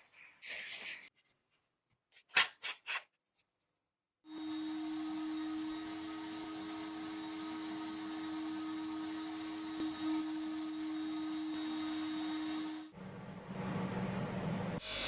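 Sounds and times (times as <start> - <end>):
electric power tool running: 4.3 - 13.0.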